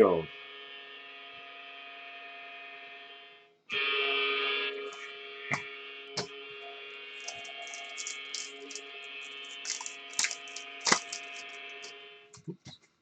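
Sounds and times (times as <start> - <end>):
electrical hum: 3.8 - 12.8
trading cards rustling: 7.2 - 11.9.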